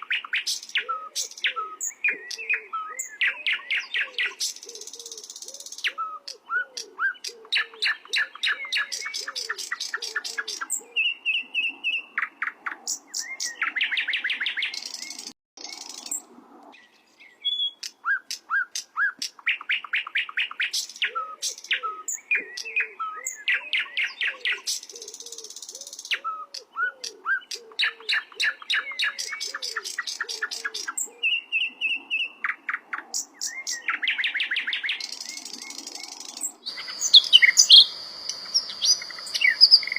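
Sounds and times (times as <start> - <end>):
faint low repeated chirp: 19.5 - 39.9
flycatcher singing: 27.0 - 39.9.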